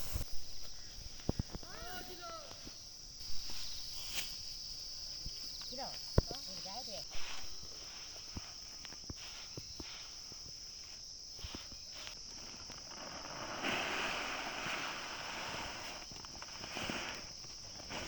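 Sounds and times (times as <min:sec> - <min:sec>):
high-pitched insect buzz: 0:00.0 - 0:13.3
rustling: 0:00.0 - 0:18.0.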